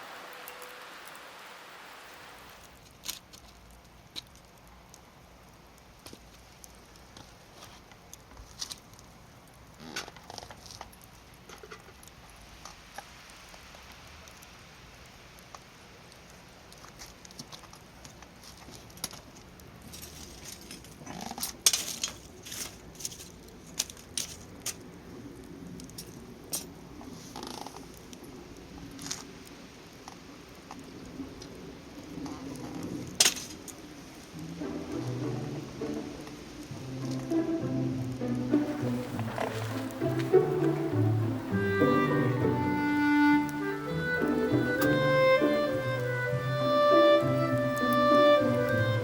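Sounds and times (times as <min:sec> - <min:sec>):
soft hiss: 0:00.0 - 0:49.0
wood fire crackling and popping: 0:00.0 - 0:49.0
metal utensils clinking and scraping: 0:19.8 - 0:24.8.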